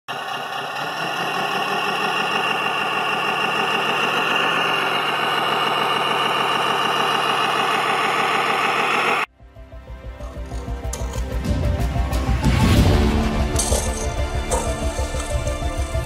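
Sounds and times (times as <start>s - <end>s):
engine idling: 0.1s - 9.3s, 13.1s - 16.0s.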